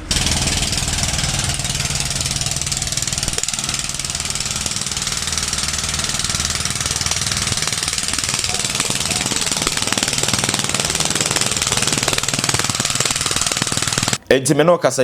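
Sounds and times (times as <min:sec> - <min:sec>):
small engine running: 0:00.0 - 0:14.2.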